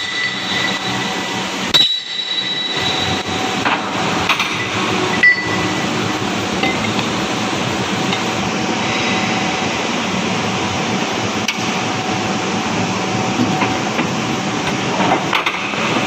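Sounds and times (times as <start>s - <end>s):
steady workshop hum: 0.0s - 16.0s
metal tools striking steel parts: 1.7s - 2.9s, 4.4s - 5.7s.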